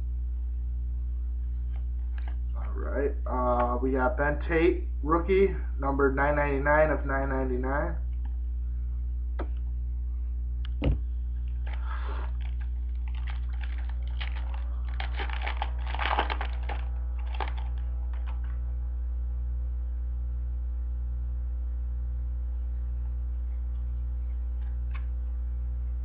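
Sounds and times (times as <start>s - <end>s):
low electrical hum: 0.0s - 26.0s
cards clicking and rustling: 11.6s - 18.5s.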